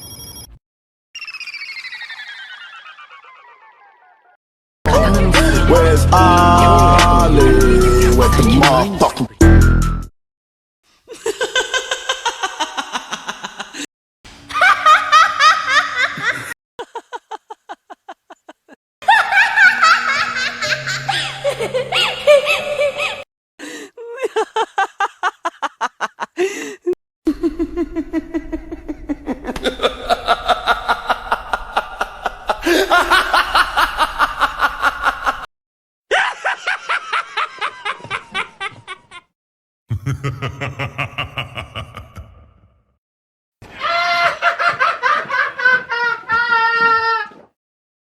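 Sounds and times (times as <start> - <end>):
music: 4.9 - 10.1
people laughing: 11.1 - 13.9, 14.5 - 23.2, 24.0 - 35.5, 36.1 - 39.3, 39.9 - 42.6, 43.7 - 47.4.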